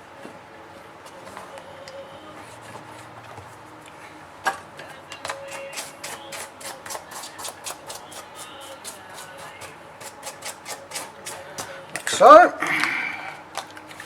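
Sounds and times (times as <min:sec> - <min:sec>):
scraping strokes on phone: 0:05.3 - 0:11.8.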